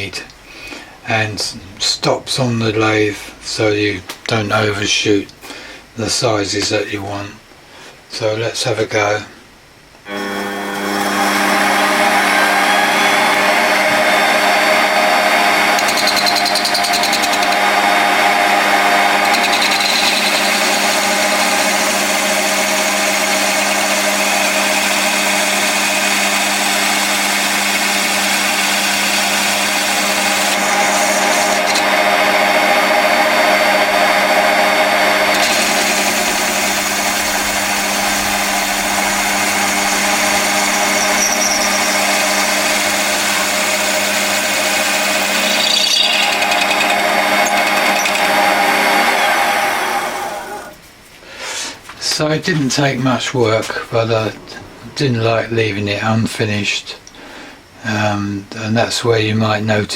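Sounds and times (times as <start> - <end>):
boring tool cutting metal: 10.1 - 50.7
metal lathe motor whine: 10.1 - 50.8.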